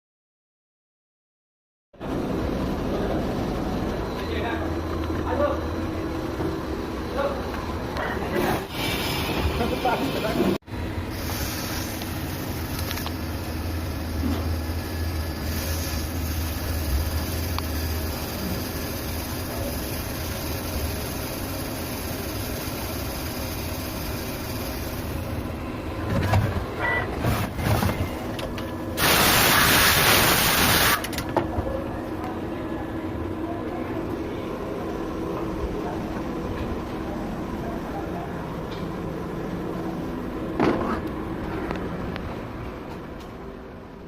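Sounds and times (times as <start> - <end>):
machinery running: 2.0 - 26.4
loud even hiss: 29.0 - 31.1.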